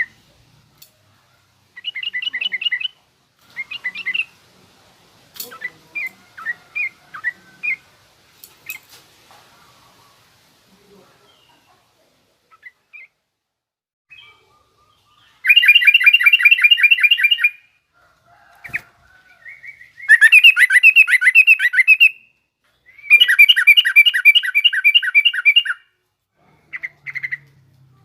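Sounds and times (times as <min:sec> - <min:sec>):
bulbul chattering song: 0:01.8 - 0:04.4, 0:14.1 - 0:17.7, 0:19.4 - 0:25.9, 0:26.5 - 0:27.6.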